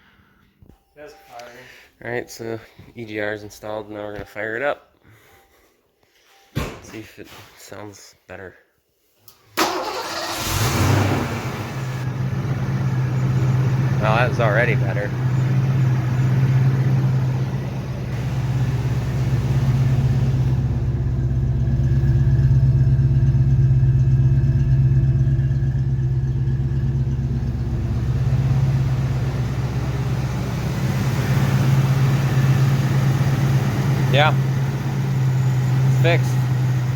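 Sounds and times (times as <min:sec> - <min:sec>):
car engine idling: 0:09.6 - 0:36.9.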